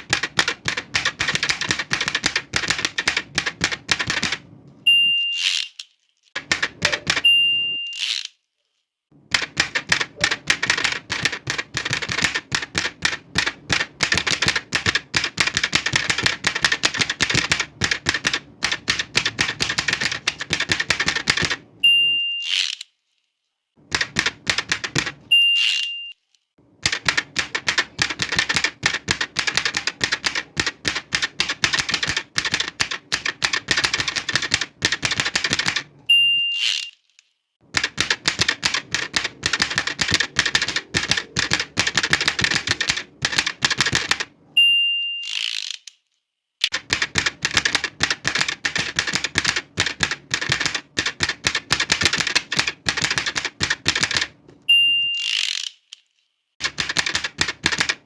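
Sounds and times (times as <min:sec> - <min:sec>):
manual typewriter key strikes: 0:00.0 - 0:04.4, 0:06.4 - 0:07.4, 0:09.3 - 0:21.6, 0:23.9 - 0:25.3, 0:26.8 - 0:36.0, 0:37.7 - 0:44.3, 0:46.6 - 0:54.4, 0:56.6 - 0:58.0
typewriter carriage return sweep: 0:00.0 - 0:04.5, 0:05.2 - 0:08.4, 0:09.3 - 0:21.7, 0:22.3 - 0:22.9, 0:23.9 - 0:26.2, 0:26.8 - 0:37.1, 0:37.7 - 0:44.4, 0:45.2 - 0:45.9, 0:46.6 - 0:56.0, 0:56.6 - 0:58.0
typewriter bell ding: 0:04.9 - 0:05.4, 0:06.8 - 0:08.0, 0:54.7 - 0:55.3.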